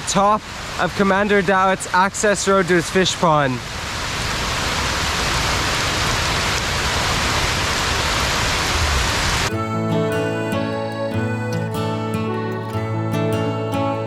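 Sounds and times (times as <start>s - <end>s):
heavy rain: 0.0s - 9.5s
acoustic guitar music: 9.5s - 14.0s.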